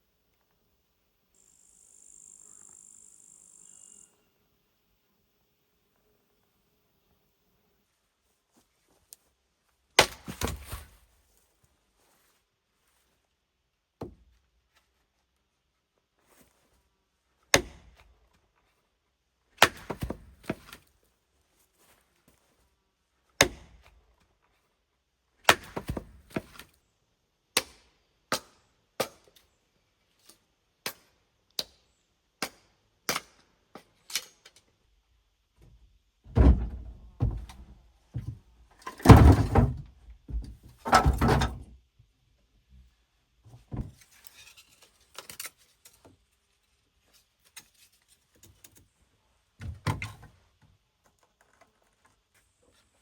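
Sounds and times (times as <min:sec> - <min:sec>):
sharp knocks and thuds: 0:36.3 - 0:38.4, 0:39.0 - 0:41.7.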